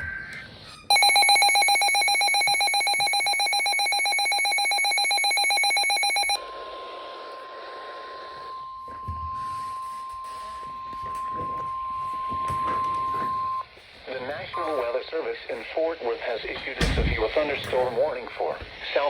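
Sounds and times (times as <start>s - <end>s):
pulsing electronic alarm tone: 0.9s - 6.5s, 8.4s - 13.6s.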